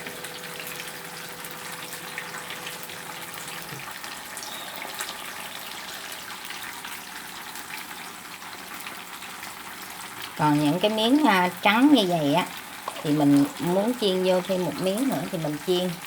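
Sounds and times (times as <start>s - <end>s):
food frying in oil: 0.0s - 16.0s.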